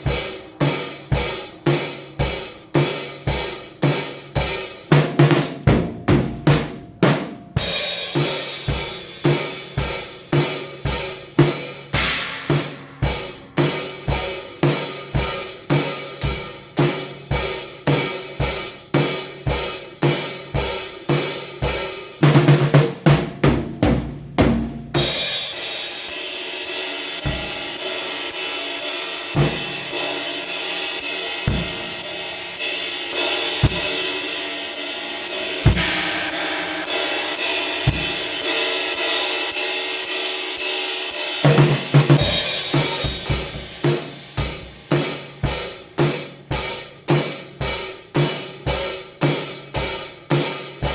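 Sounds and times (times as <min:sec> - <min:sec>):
drum kit groove: 0:00.0 - 0:50.9
kick drum hits: 0:05.4 - 0:06.8, 0:22.8 - 0:25.0, 0:33.6 - 0:34.0, 0:35.7 - 0:36.2, 0:43.0 - 0:43.9
cymbal pattern: 0:07.6 - 0:22.3, 0:25.0 - 0:50.9.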